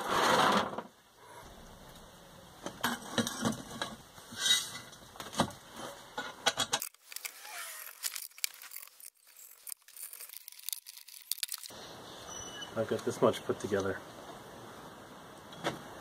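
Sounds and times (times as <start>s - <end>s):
metal tools clinking and rattling: 6.2s - 11.7s.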